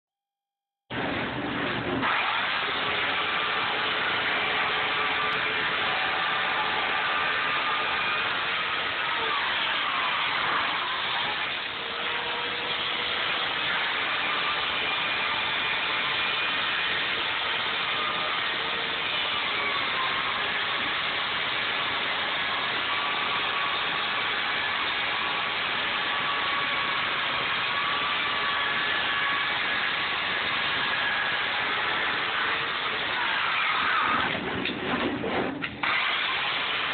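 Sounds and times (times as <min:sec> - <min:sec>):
electric chainsaw carving foam: 0:01.0 - 0:34.8, 0:35.8 - 0:36.9.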